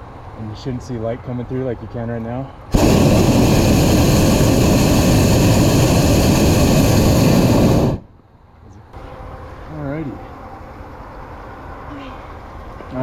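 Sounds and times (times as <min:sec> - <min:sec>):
propane burner blast: 0:02.7 - 0:08.1.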